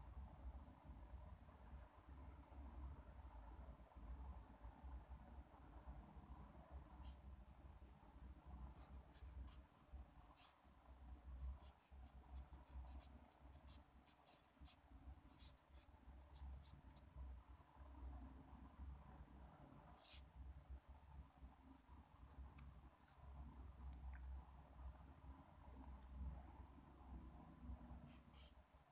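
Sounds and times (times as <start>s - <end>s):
low steady hum: 0.0s - 28.9s
pen scratching on paper: 7.0s - 10.7s, 11.4s - 17.1s, 20.0s - 20.2s, 28.0s - 28.6s.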